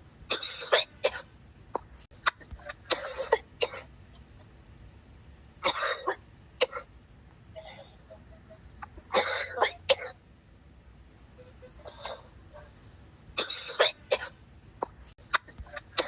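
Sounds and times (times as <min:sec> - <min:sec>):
person coughing hard: 0:00.3 - 0:03.9, 0:09.1 - 0:10.2, 0:13.4 - 0:16.0.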